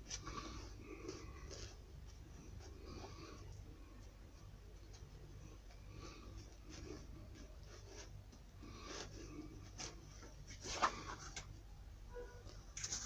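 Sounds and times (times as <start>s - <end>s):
scraping and rubbing on a shoe: 0.0s - 11.7s, 12.6s - 13.0s
low steady hum: 0.0s - 13.0s.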